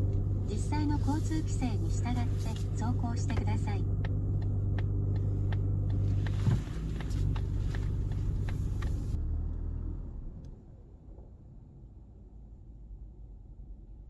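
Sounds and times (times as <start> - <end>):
low drivetrain hum: 0.0 - 10.8
light regular ticks: 0.1 - 9.2.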